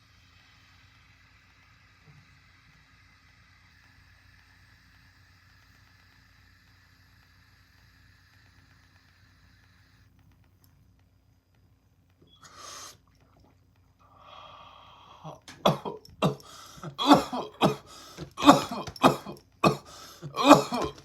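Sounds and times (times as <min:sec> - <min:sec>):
person coughing hard: 0:15.3 - 0:21.0.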